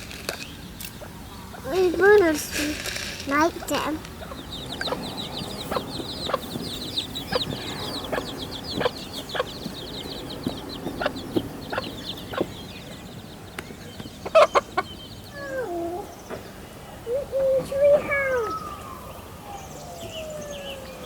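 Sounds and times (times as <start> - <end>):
baby chicks peeping: 0.0 - 21.0.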